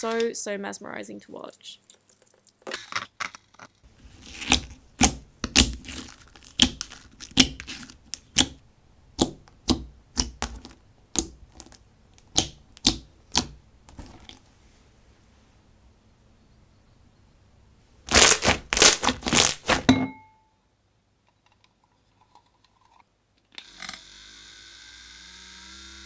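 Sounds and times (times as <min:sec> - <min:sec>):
slime clicking and popping: 0:04.4 - 0:08.6, 0:09.2 - 0:13.6.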